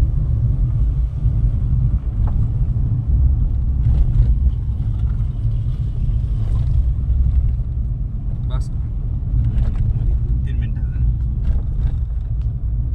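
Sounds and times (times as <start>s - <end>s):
moving vehicle rumble: 0.0s - 12.9s.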